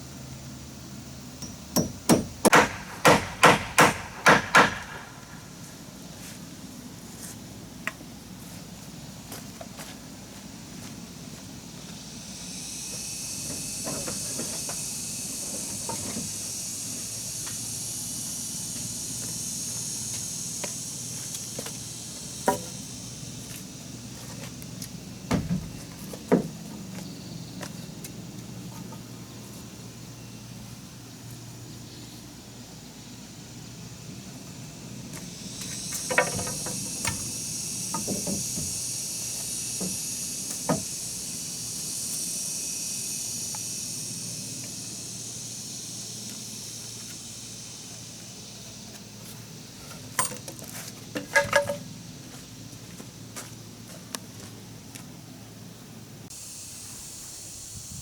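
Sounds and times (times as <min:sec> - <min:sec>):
insects buzzing: 0:00.0 - 0:58.0
sharp knocks on wood: 0:01.4 - 0:05.2.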